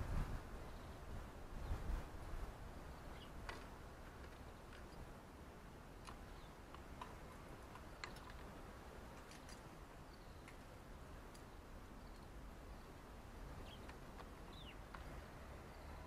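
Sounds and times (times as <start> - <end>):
small birds chirping: 0.6 - 2.0, 2.6 - 16.0
sharp clicks and ticks: 6.0 - 8.5.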